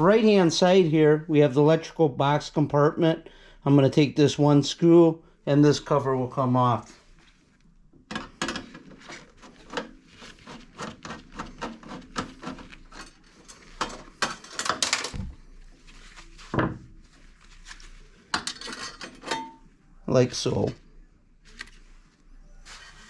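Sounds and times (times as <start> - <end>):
screwdriver and sheet metal clatter: 10.8 - 15.2, 18.4 - 19.6.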